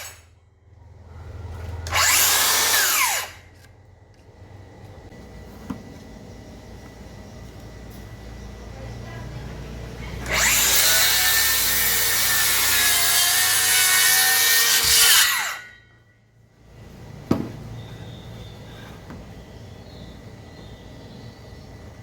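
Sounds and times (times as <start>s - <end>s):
circular saw cutting wood: 1.6s - 3.7s, 10.2s - 15.9s.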